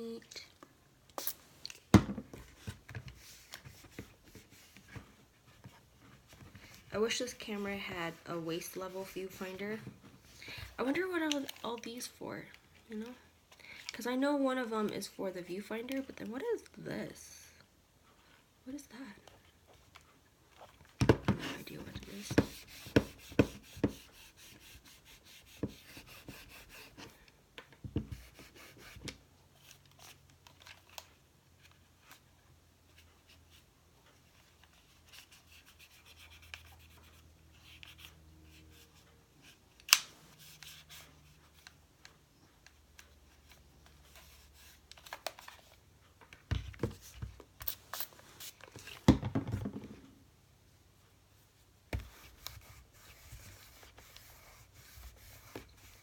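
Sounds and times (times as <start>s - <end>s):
knocks and rustles: 49.0s - 50.2s.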